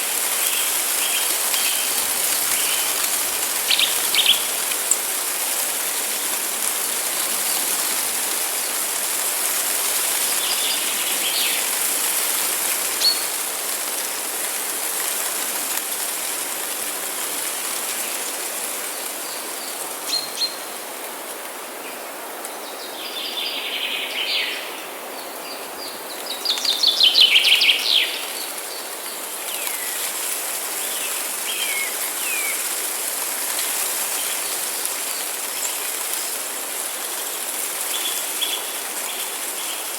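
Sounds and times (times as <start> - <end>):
songbirds chirping: 0.4 - 6.3.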